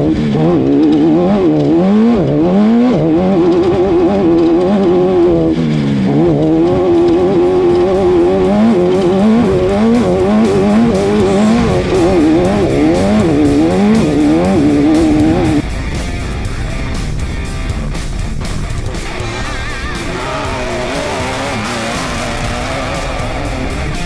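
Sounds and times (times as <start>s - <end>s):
race car engine revving: 0.0s - 24.0s
guitar music: 11.4s - 24.0s.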